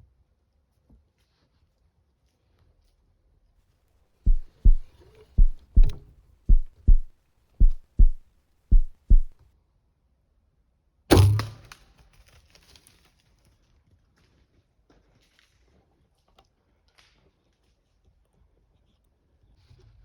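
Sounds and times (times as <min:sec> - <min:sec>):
heartbeat thumps: 0:04.3 - 0:09.4
bow shot thwack: 0:05.4 - 0:08.2, 0:11.1 - 0:11.7.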